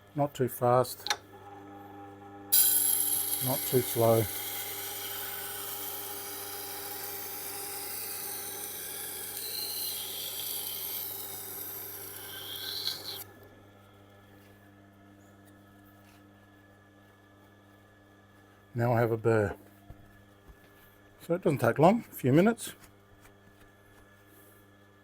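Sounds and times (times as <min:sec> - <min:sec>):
faint grinder motor hum: 0:01.0 - 0:16.2
knife blade rasping on grindstone: 0:09.4 - 0:13.2.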